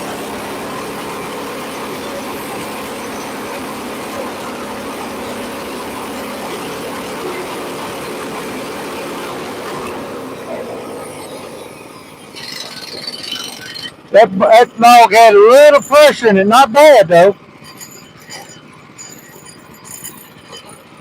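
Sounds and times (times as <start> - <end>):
bandsaw cutting log: 0.0 - 14.2
gas engine running: 0.0 - 21.0.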